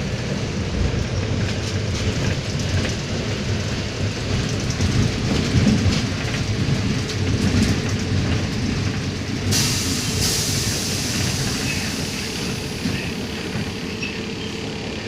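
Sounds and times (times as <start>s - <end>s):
bus engine droning: 0.0s - 15.0s
loud hiss: 9.5s - 13.3s.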